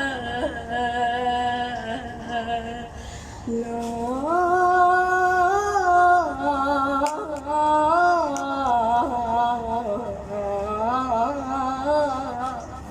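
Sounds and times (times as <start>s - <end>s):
child singing a lament: 0.0s - 12.9s.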